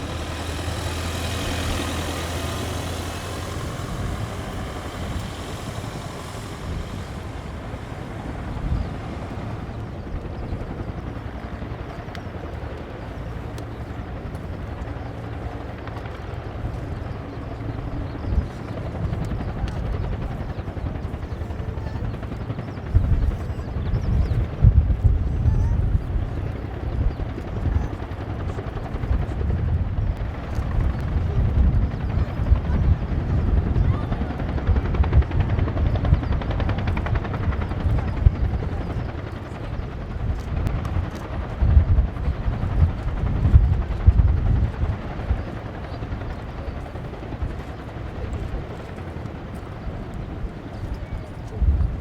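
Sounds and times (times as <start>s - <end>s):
low rumble: 0.0s - 12.2s
helicopter rotor beating: 0.0s - 52.0s.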